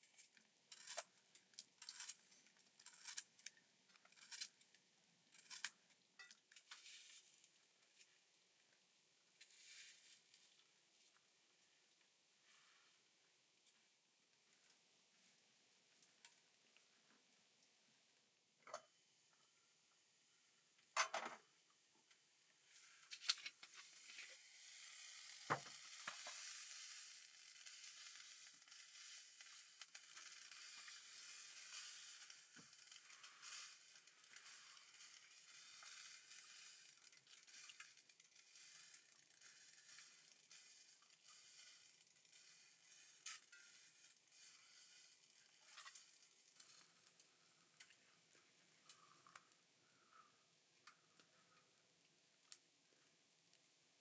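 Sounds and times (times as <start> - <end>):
food sizzling in a pan: 22.6 - 49.2.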